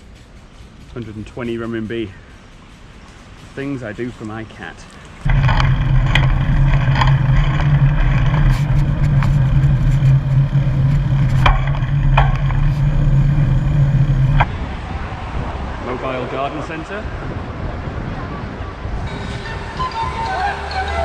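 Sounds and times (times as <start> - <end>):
road traffic engine hum: 0.0 - 21.0
sharp clicks and knocks: 5.2 - 14.5.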